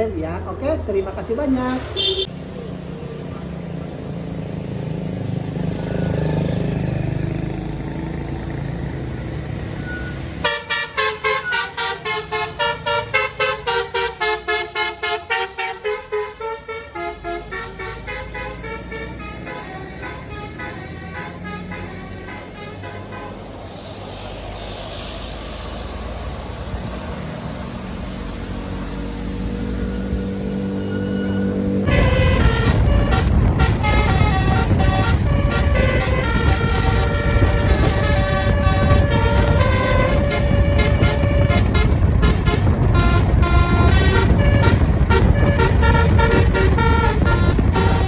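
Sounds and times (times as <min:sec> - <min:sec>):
engine and road rumble: 0:00.0 - 0:48.0
large bus passing by: 0:00.0 - 0:48.0
musical bus horn melody: 0:09.8 - 0:23.7, 0:28.4 - 0:48.0.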